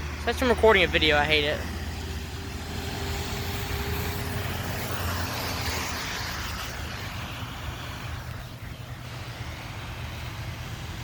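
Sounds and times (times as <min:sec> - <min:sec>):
heavy rain: 0:02.9 - 0:11.0.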